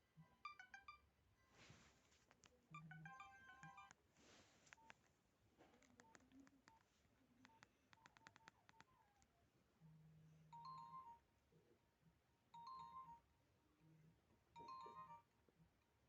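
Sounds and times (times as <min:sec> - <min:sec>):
phone electronic beeps: 0:00.5 - 0:01.1, 0:02.7 - 0:03.9.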